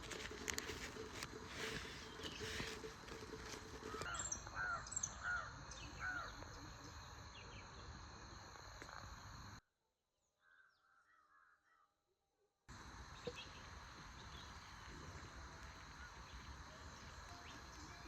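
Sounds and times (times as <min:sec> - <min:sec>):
rustling: 0:00.0 - 0:04.4
steady high-pitched whine: 0:00.0 - 0:09.6, 0:12.7 - 0:18.0
crow cawing: 0:03.8 - 0:06.7.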